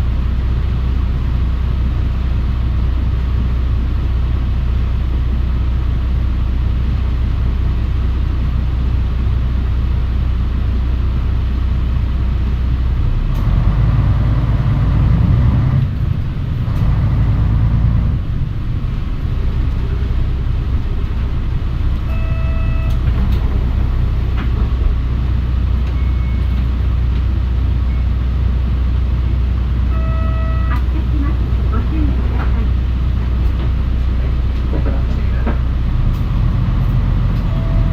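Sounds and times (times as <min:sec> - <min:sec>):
bus engine drone: 0:00.0 - 0:37.9
short electronic beep: 0:22.1 - 0:23.1, 0:29.9 - 0:30.8, 0:37.5 - 0:37.9.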